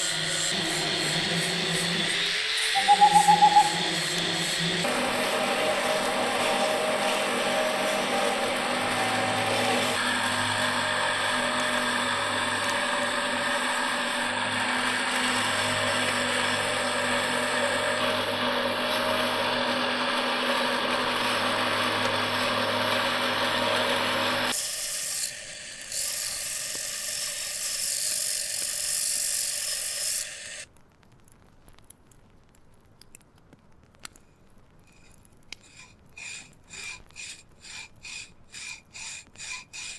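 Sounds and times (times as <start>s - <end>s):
harsh high hiss: 0.0s - 5.5s
power tool humming: 0.0s - 30.7s
faint small clicks: 30.7s - 35.6s.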